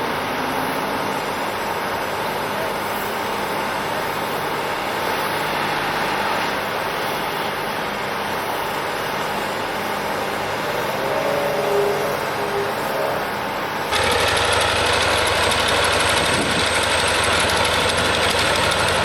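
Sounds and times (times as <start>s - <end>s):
heavy machinery engine: 0.0s - 19.0s
faint wavering tone: 11.1s - 13.2s.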